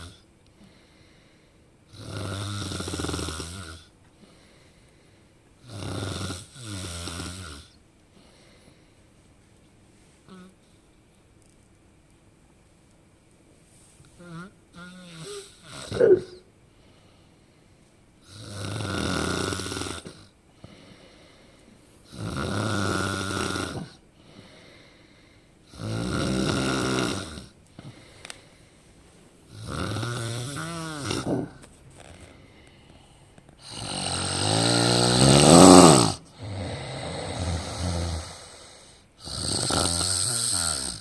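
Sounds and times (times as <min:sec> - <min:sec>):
person snoring: 0:01.9 - 0:03.9, 0:14.2 - 0:16.4, 0:18.3 - 0:21.2, 0:22.1 - 0:24.9, 0:25.7 - 0:27.6, 0:29.5 - 0:41.0.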